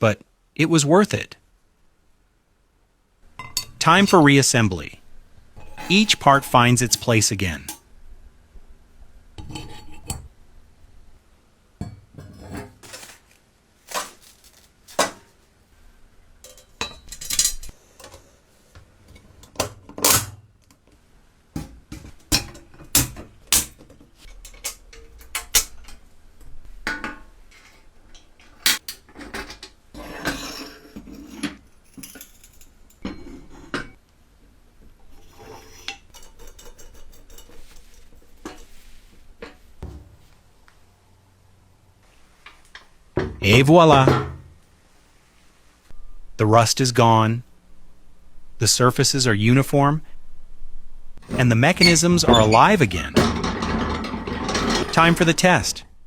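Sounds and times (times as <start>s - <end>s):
metal parts clinking and knocking: 3.4s - 4.3s, 16.4s - 18.2s, 21.6s - 26.0s, 26.9s - 34.0s, 35.8s - 38.8s, 51.2s - 55.8s
short metal scrapes: 5.6s - 7.2s.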